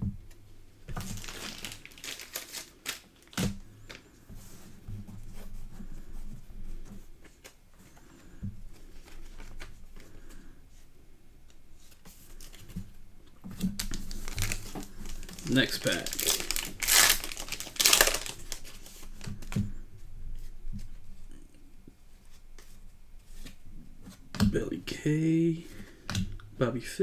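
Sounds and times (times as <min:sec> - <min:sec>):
plastic sleeve rustling and crinkling: 0:00.8 - 0:05.7, 0:08.7 - 0:10.4, 0:11.8 - 0:21.2.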